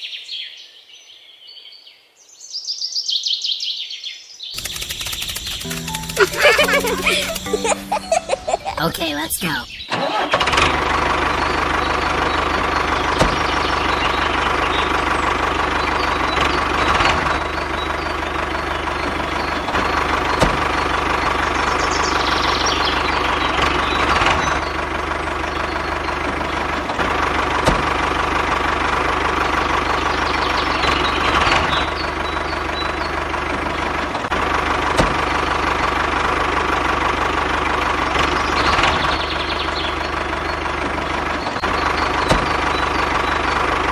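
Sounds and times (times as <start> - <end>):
small motor droning: 4.6 - 7.2
sharp clicks: 4.6 - 8.0.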